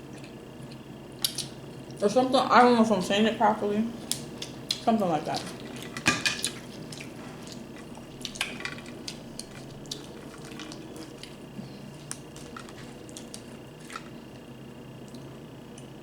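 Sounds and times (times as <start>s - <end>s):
faint steady hum: 0.0s - 16.0s
seafood shells cracking by hand: 5.8s - 14.4s.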